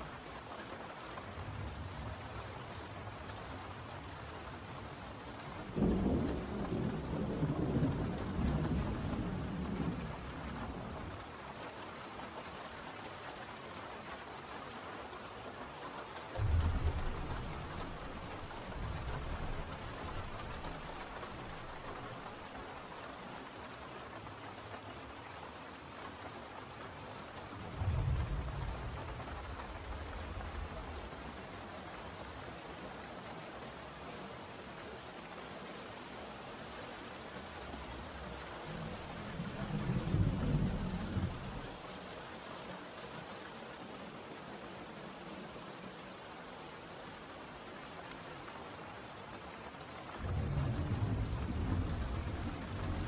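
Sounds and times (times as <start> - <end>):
thunder rumbling: 5.6 - 11.2, 16.4 - 22.6, 27.4 - 31.4, 37.4 - 41.9, 50.2 - 53.0
rain hissing: 16.4 - 22.8, 27.4 - 32.3, 37.1 - 42.0, 50.2 - 53.0.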